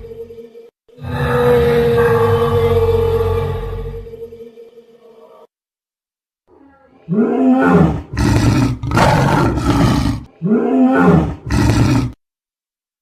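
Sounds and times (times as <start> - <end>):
dinosaur roar: 1.0 - 4.0, 7.1 - 12.2.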